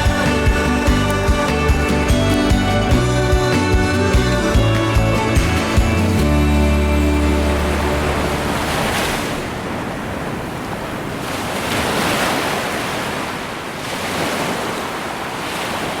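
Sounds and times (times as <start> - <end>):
outro music: 0.0 - 9.0
waves washing in: 0.0 - 16.0.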